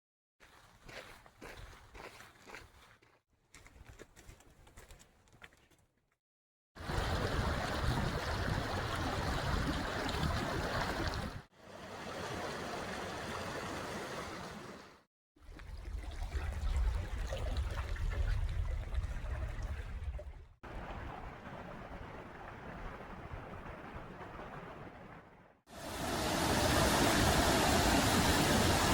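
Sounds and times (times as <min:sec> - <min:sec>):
waterfall rushing water: 0:25.7 - 0:28.9.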